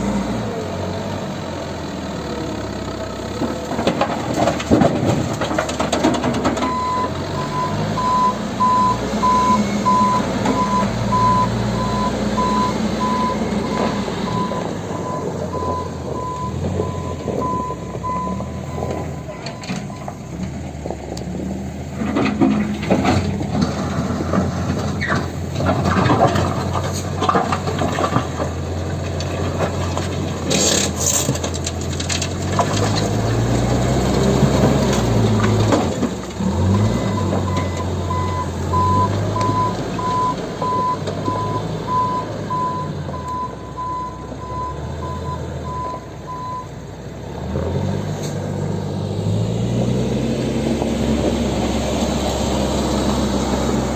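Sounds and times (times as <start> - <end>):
backhoe diesel engine working: 0.0 - 53.9
knocks and clatter: 3.3 - 7.2, 15.2 - 38.0
reversing alarm beeping: 6.6 - 20.1, 36.7 - 46.8.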